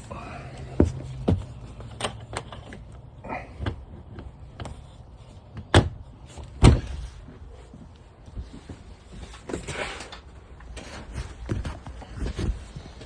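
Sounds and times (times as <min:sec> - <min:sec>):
bed frame clicks and knocks: 0:05.5 - 0:07.2
loud thumps of bed settling: 0:06.6 - 0:07.2.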